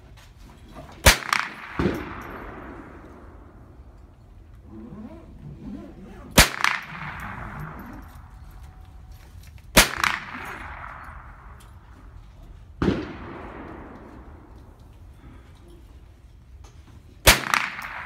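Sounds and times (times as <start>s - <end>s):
rifle shots: 1.0s - 4.0s, 6.0s - 8.7s, 9.7s - 11.6s, 12.8s - 14.9s, 17.2s - 18.0s.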